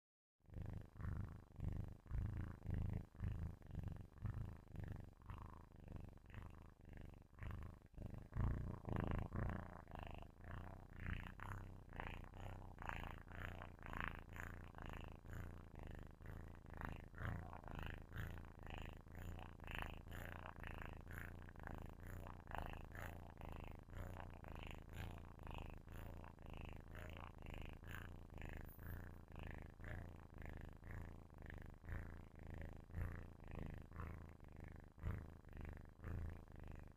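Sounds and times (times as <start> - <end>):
kitten purring: 0.4 - 36.9.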